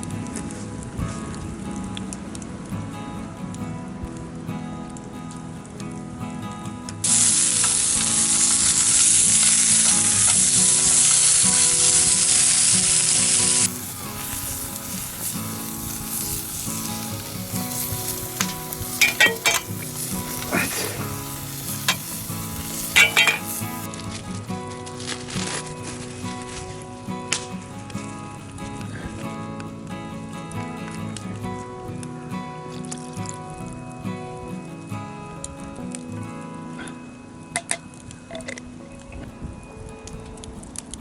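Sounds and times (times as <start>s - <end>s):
food sizzling in a pan: 7.0s - 23.9s.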